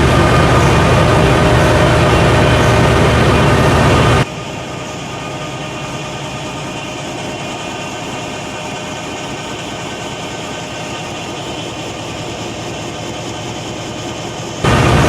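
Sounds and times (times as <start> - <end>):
printing machine running: 0.0 - 15.0.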